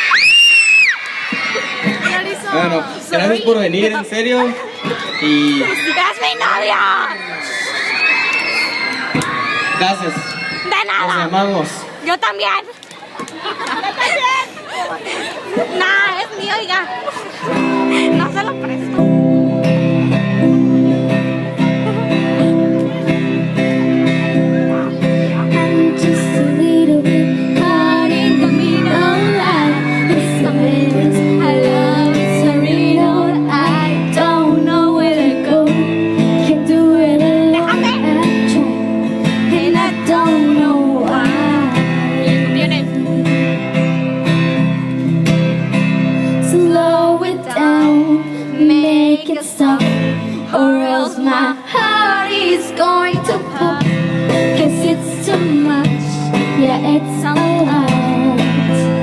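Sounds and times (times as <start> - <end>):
strummed acoustic guitar: 17.4 - 51.0, 51.7 - 59.0
woman singing: 25.3 - 44.0, 46.4 - 59.0.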